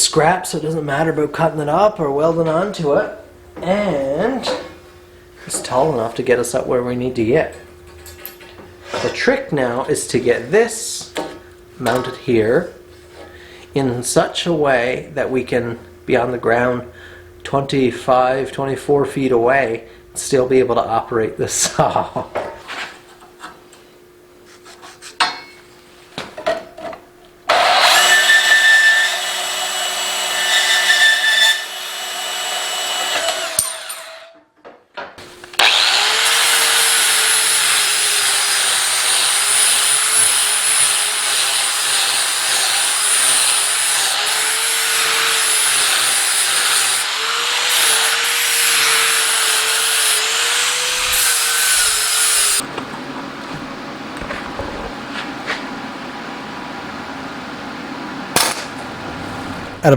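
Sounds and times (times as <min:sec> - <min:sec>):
power tool running: 0:27.5 - 0:34.1, 0:35.2 - 0:52.6.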